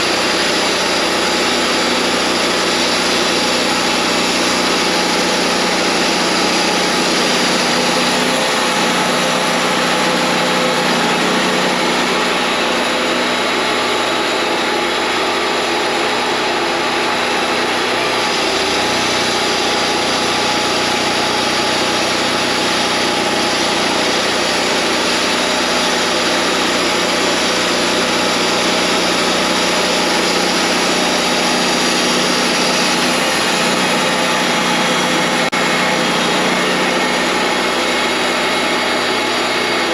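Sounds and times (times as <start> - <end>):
bandsaw sawmill running: 0.0 - 39.9.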